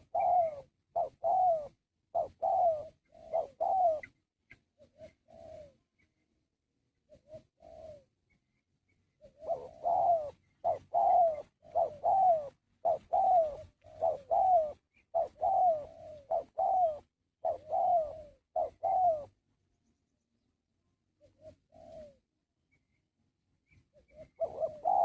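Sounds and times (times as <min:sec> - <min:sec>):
dove cooing: 0:00.0 - 0:06.2, 0:07.0 - 0:08.3, 0:09.1 - 0:19.4, 0:21.1 - 0:22.4, 0:23.7 - 0:25.0.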